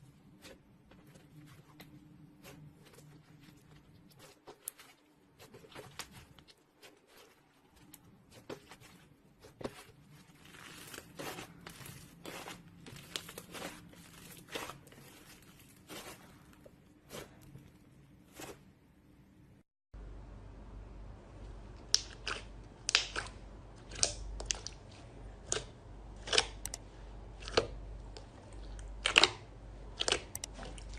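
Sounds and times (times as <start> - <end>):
faint steady hum: 7.3 - 30.9.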